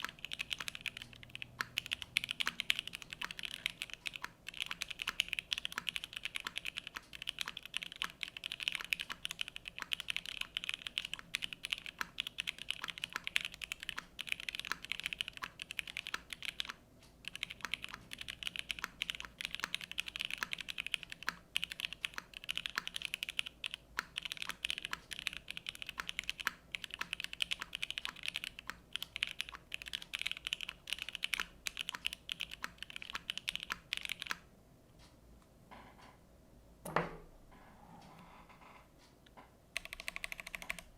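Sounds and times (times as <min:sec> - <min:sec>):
mechanical keyboard typing: 0:00.0 - 0:34.5, 0:39.8 - 0:40.9.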